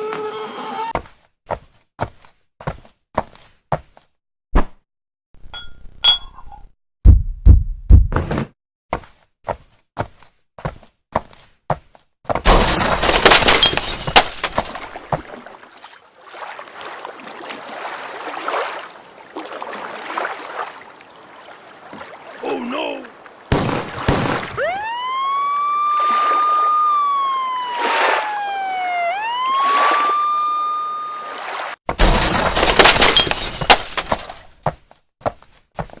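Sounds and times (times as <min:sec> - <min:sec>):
siren-like wailing tone: 0:24.5 - 0:31.5.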